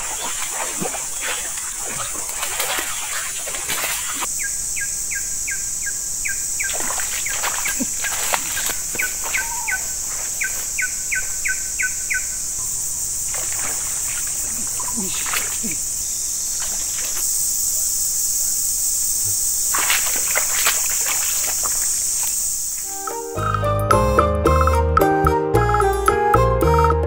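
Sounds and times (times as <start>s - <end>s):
rustling or splashing knocks: 0.0s - 4.3s, 6.7s - 10.6s, 13.3s - 15.7s, 19.7s - 22.4s
insect drone: 0.0s - 23.6s
bird calling falling notes: 7.6s - 12.8s, 22.8s - 26.4s.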